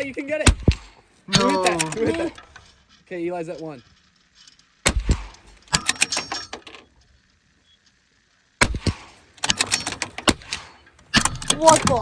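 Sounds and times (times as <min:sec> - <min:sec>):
rifle shots cracking: 0:04.8 - 0:05.8, 0:08.6 - 0:12.0.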